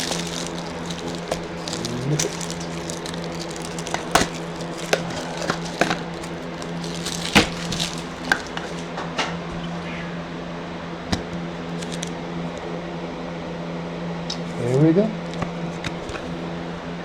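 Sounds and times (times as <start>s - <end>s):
plastic wrapper crinkling: 0.0s - 9.0s
scissors snipping plastic: 0.0s - 9.0s.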